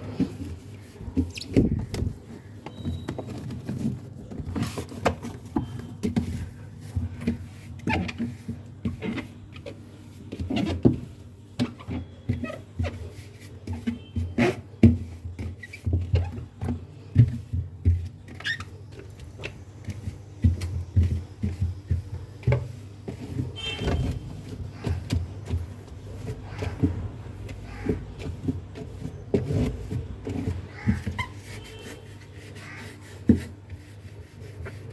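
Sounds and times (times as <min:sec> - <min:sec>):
wet cloth rubbing: 0:21.2 - 0:34.9.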